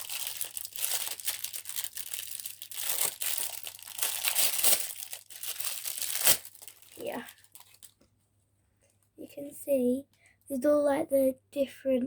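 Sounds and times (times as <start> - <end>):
packet crinkling and rustling: 0.0 - 8.0.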